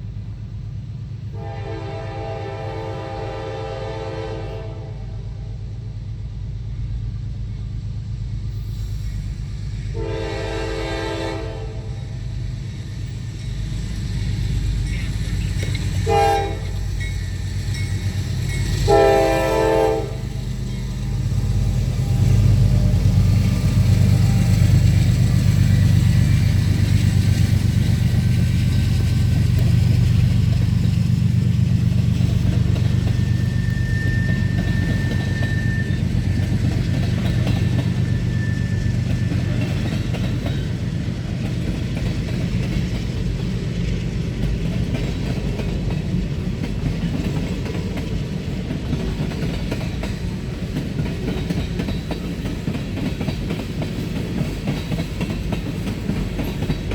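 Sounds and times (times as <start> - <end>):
locomotive engines droning: 0.0 - 56.9
freight cars rolling on rails: 8.4 - 56.9
high-pitched squeal: 32.2 - 40.1.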